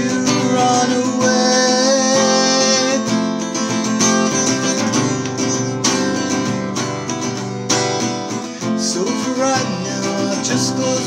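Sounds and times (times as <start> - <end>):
person singing: 0.0 - 6.5, 8.5 - 11.0
instrumental accompaniment: 0.0 - 11.0.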